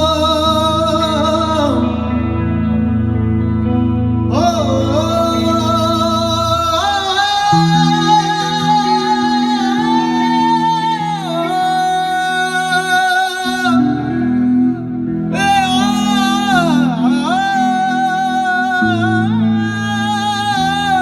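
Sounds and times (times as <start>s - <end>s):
man singing long sliding notes: 0.0s - 21.0s.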